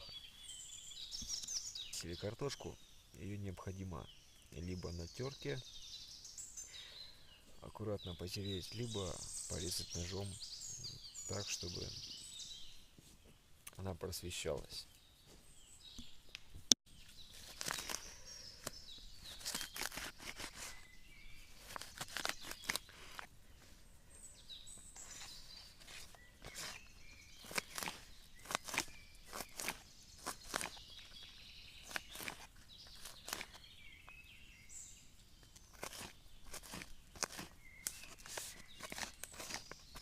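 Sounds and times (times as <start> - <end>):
knife scraping raw potato: 17.4 - 23.3, 24.9 - 33.6, 35.5 - 40.0.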